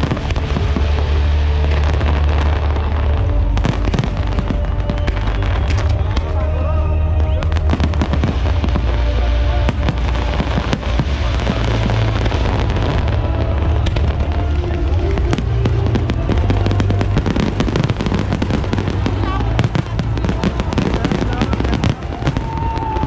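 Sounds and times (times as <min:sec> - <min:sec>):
firework booms: 0:00.0 - 0:06.6, 0:07.2 - 0:23.0
firework crackling bursts: 0:00.0 - 0:23.0.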